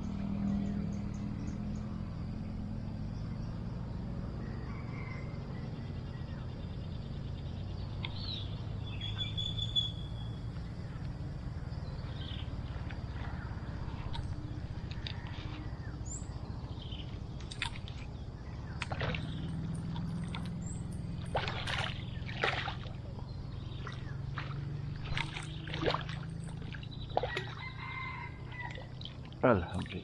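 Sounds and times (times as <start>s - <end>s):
water splashing and sloshing: 10.0s - 30.0s.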